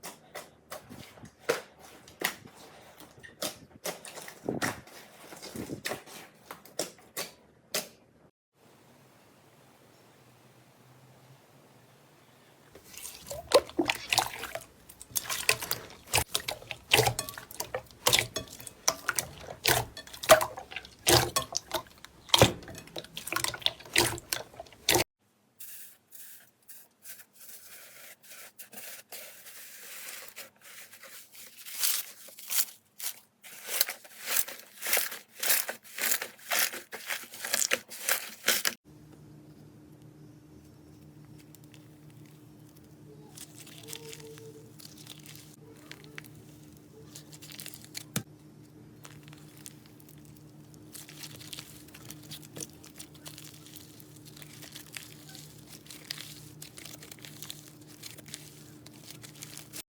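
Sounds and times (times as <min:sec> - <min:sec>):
slime squishing: 0:12.8 - 0:25.1, 0:41.4 - 0:48.3, 0:49.0 - 0:59.8
slime popping and crackling: 0:49.0 - 0:59.8.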